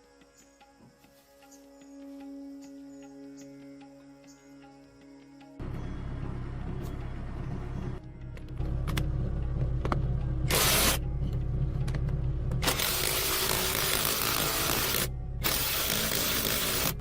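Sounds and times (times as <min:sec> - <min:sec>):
machine humming: 0:05.6 - 0:17.0.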